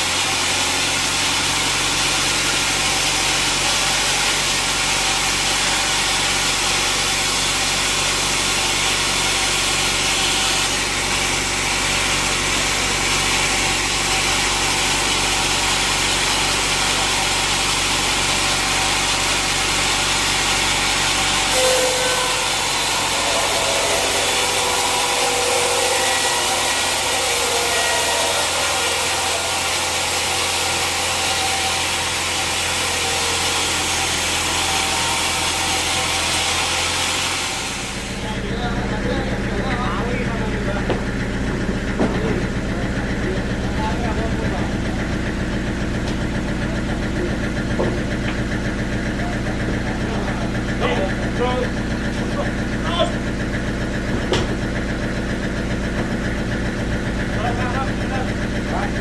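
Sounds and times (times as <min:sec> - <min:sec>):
saw cutting wood: 0:00.0 - 0:38.4
mill machinery running: 0:00.0 - 0:59.0
wavering whine: 0:21.0 - 0:34.0.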